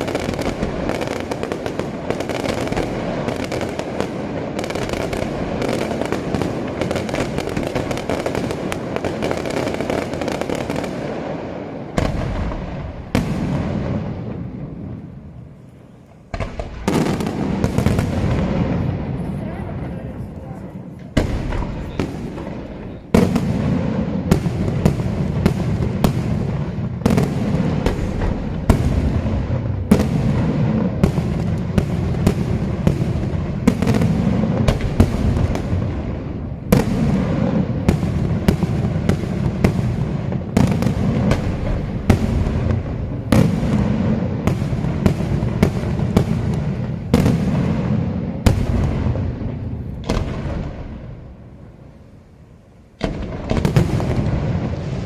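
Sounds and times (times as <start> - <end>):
rolling rumble of echoes: 10.9 - 51.5.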